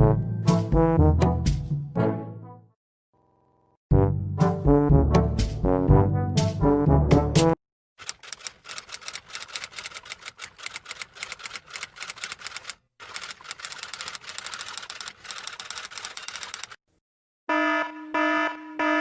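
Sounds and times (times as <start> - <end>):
typewriter keys clacking: 8.0 - 16.8.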